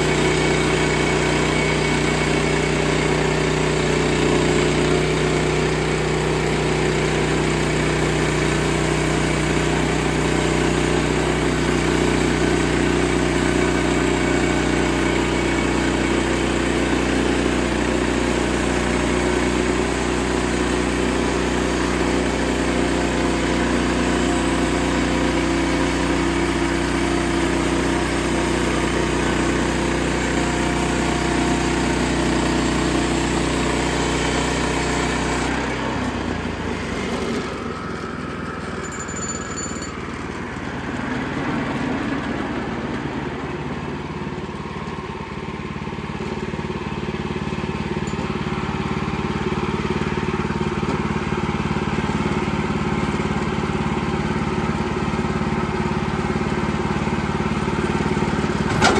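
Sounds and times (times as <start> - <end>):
sawmill engine running: 0.0 - 58.9
saw blade cutting log: 11.8 - 37.8.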